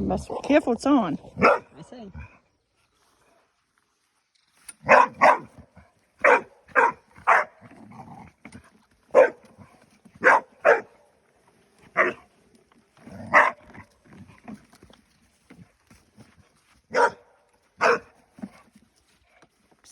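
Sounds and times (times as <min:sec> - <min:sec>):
dog barking: 0:01.4 - 0:01.7, 0:04.8 - 0:05.6, 0:06.2 - 0:07.6, 0:09.1 - 0:09.5, 0:10.2 - 0:11.0, 0:12.0 - 0:12.2, 0:13.3 - 0:13.6, 0:16.9 - 0:18.1.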